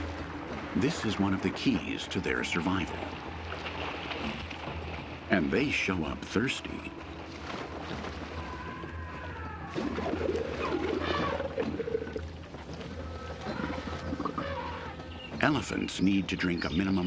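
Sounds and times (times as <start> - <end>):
elephants moaning calls: 8.2 - 15.4.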